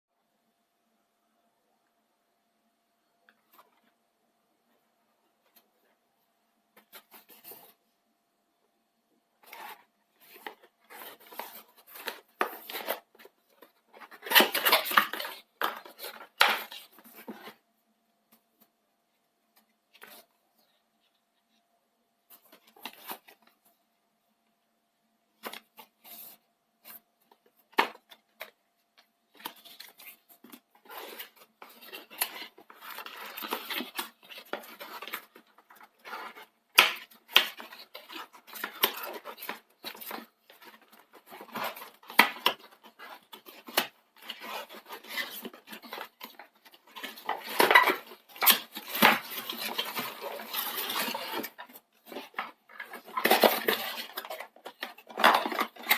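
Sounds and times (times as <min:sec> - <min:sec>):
cardboard and plastic rustling: 0:09.4 - 0:17.6, 0:25.3 - 0:55.9.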